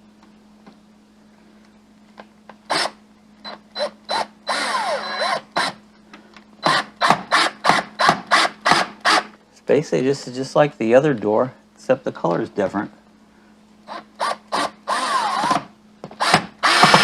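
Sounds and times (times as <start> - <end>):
power tool whirring: 2.7 - 5.8, 13.9 - 17.0.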